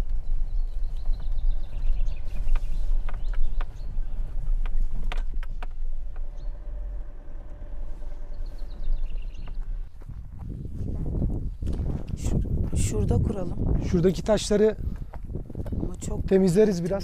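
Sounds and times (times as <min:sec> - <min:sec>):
bird singing: 0:00.0 - 0:10.2
vehicle rumbling over dirt track: 0:00.0 - 0:17.0
sharp knocks and rattles: 0:02.4 - 0:10.5.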